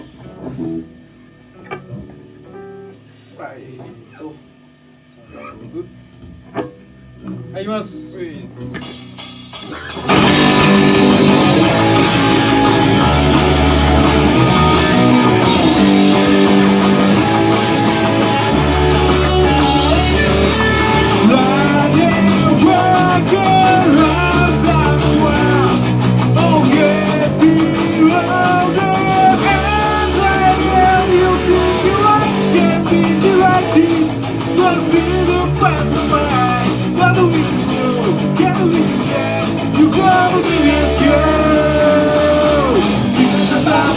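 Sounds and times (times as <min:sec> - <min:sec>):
bass line: 0:08.2 - 0:43.9
rock band playing: 0:08.5 - 0:43.9
person singing: 0:10.1 - 0:43.9.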